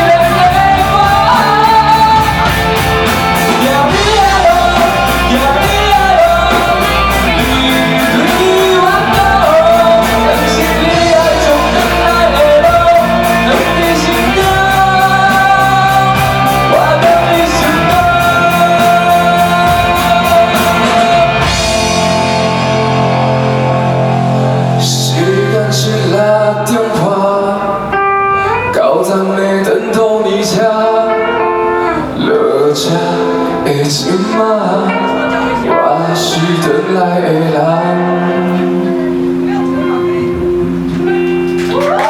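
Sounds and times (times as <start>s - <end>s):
drums: 0.0s - 42.0s
electric guitar solo: 27.8s - 28.8s, 31.1s - 32.2s, 33.2s - 36.7s, 38.0s - 42.0s.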